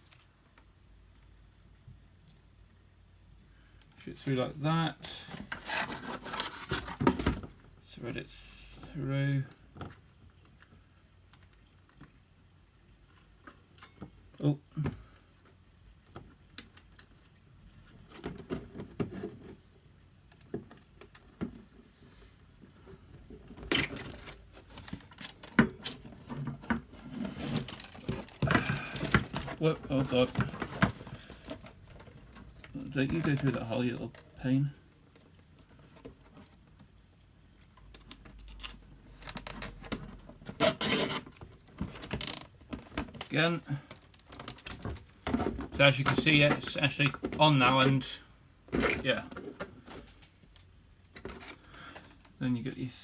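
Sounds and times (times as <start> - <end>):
plastic clicks and rustles: 22.6 - 34.3, 34.9 - 52.4
cable tie rustling: 22.7 - 34.4.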